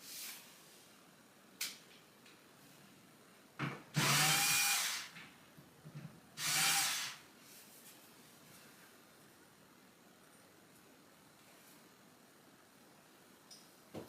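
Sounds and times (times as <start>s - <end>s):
power drill running: 4.0s - 5.1s, 6.4s - 7.2s.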